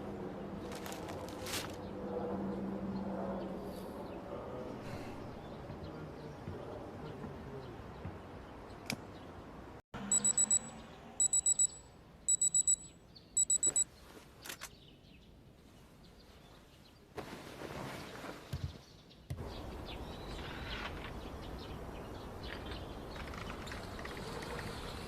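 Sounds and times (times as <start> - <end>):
digital alarm clock beeping: 10.1 - 13.8.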